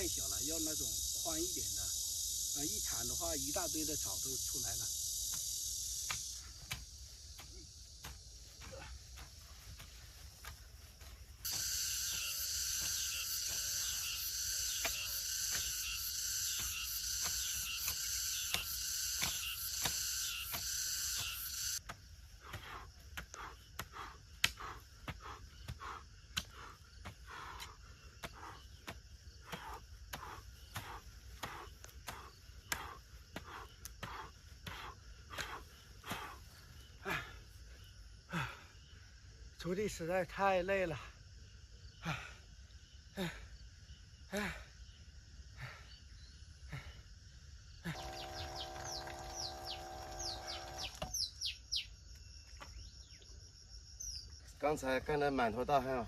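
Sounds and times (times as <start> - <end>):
insect chorus buzzing: 0.0 - 56.0
hoe chopping into soil: 14.7 - 22.8.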